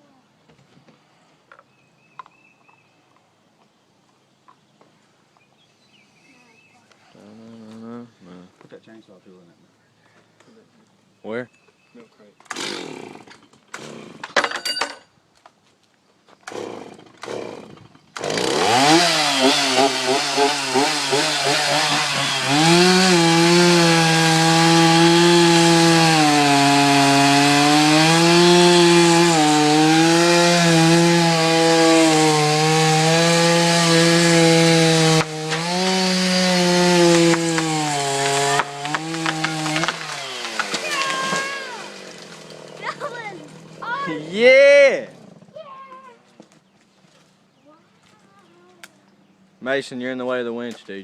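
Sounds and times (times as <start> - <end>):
chainsaw cutting wood: 12.5 - 14.6, 16.4 - 44.2.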